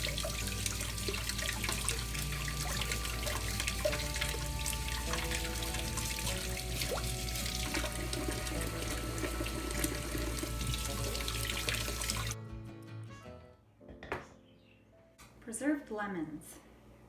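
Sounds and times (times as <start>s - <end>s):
water running: 0.0s - 12.4s
soft background music: 0.0s - 16.4s.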